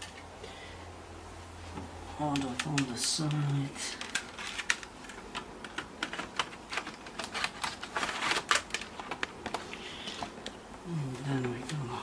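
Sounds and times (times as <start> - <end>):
plastic clicks and scrapes: 2.3 - 10.6.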